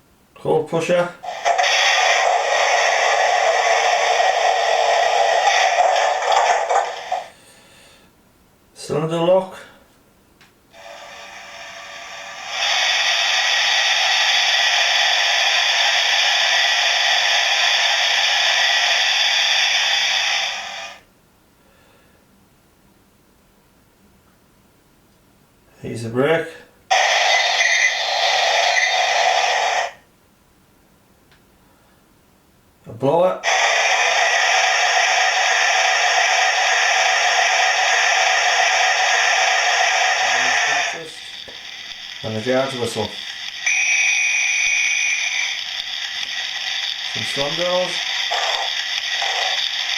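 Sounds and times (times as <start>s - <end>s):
steam hiss from small speaker: 1.2s - 7.4s, 10.7s - 21.1s, 26.9s - 30.0s, 33.4s - 49.9s.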